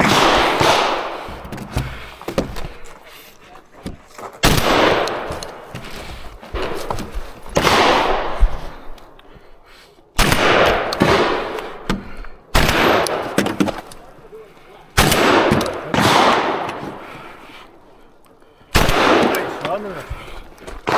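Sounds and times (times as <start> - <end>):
shotgun blasts echoing: 0.0 - 1.3, 4.4 - 5.6, 7.6 - 8.6, 10.2 - 11.9, 12.5 - 13.4, 15.0 - 17.0, 18.7 - 20.0.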